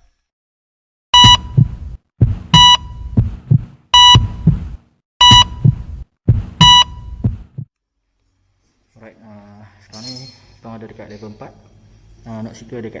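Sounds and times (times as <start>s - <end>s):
electronic beep: 1.2s - 1.6s, 2.6s - 3.0s, 4.0s - 4.4s, 5.2s - 5.7s, 6.6s - 7.2s
heartbeat double thump: 1.2s - 7.7s.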